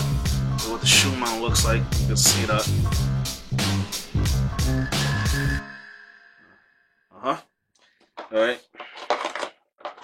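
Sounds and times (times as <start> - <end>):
electronic music with bass beat: 0.0 - 5.7
high held tone: 3.8 - 7.3.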